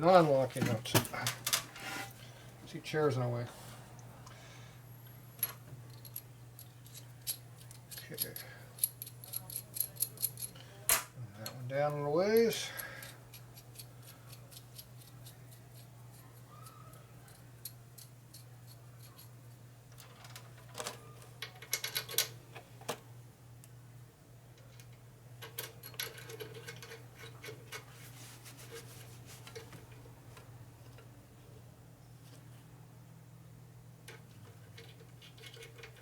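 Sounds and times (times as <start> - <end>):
low electrical hum: 0.0 - 36.0
nuts and bolts clinking: 5.4 - 10.7, 16.6 - 22.4, 24.6 - 27.9, 34.0 - 36.0.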